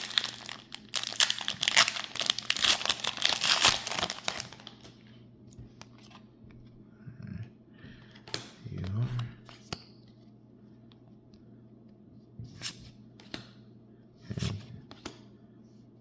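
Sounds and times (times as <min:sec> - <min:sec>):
foil wrapper crinkling and tearing: 0:00.0 - 0:04.8.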